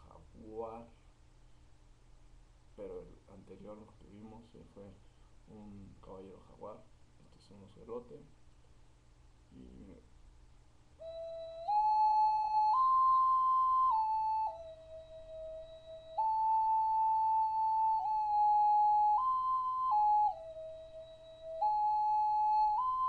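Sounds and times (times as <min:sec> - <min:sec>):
ocarina held notes: 0:11.0 - 0:23.0.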